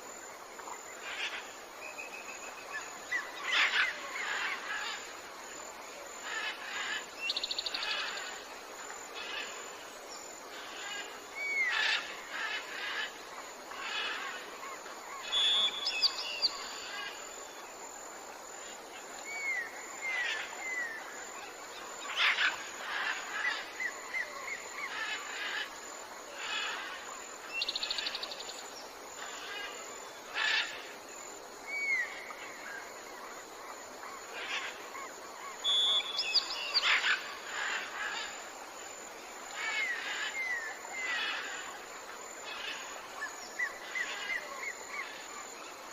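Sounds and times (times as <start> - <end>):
steady background hiss: 0.0 - 45.9
birds chirping and trilling: 1.0 - 5.1, 21.7 - 25.8, 34.1 - 38.7, 39.4 - 45.7.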